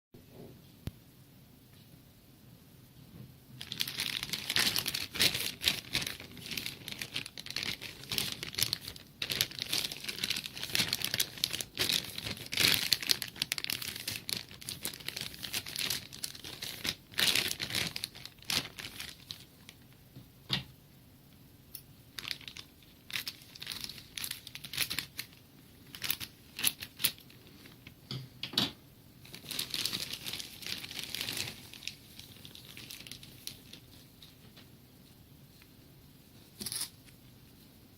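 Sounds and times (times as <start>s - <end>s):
packaging crinkling and tearing: 3.6s - 19.9s, 22.2s - 28.0s, 29.2s - 34.6s.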